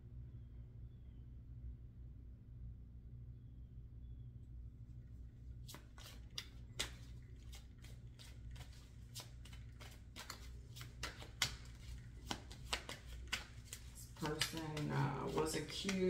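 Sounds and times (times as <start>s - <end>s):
cards being shuffled: 5.6s - 16.0s.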